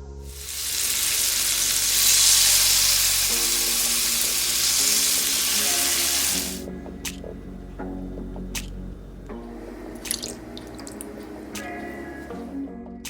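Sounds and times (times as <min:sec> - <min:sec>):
soft background music: 0:00.0 - 0:13.0
food sizzling in hot oil: 0:00.3 - 0:06.6.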